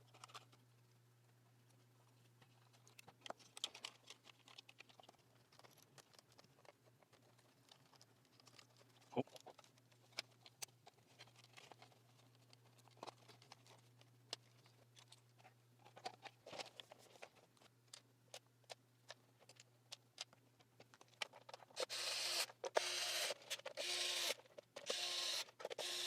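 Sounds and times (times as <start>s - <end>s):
plastic parts clicking: 0.0s - 0.6s, 2.4s - 26.0s
small motor whirring: 21.8s - 26.0s.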